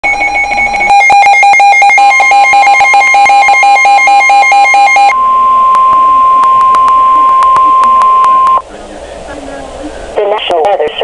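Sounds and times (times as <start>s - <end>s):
rapid electronic alarm beeps: 0.0s - 8.6s
steady high warning tone: 0.0s - 9.9s.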